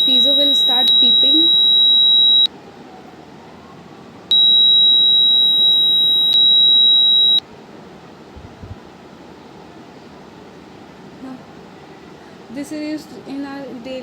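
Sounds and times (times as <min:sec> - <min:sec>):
high-pitched buzzer tone: 0:00.0 - 0:02.5, 0:04.3 - 0:07.4.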